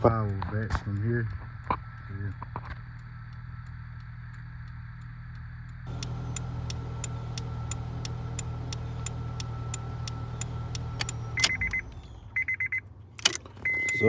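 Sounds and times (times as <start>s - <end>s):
light ticking: 2.9s - 12.4s
car engine humming: 5.9s - 14.0s.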